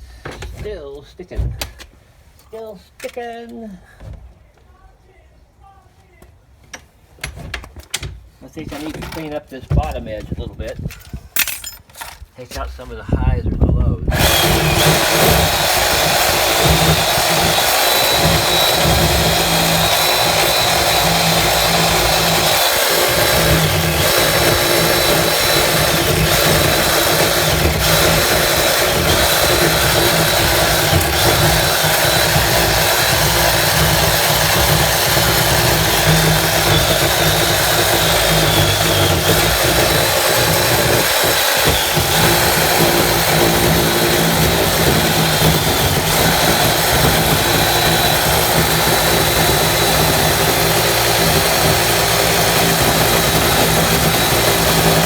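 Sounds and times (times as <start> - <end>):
power tool running under load: 14.1 - 55.0.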